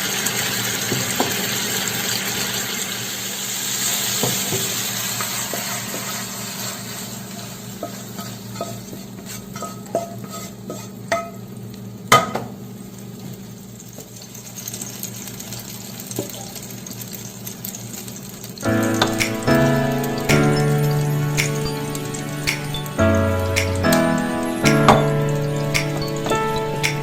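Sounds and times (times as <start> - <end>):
metal utensil clinking on pan: 9.6 - 11.4
steady hiss: 18.4 - 27.0.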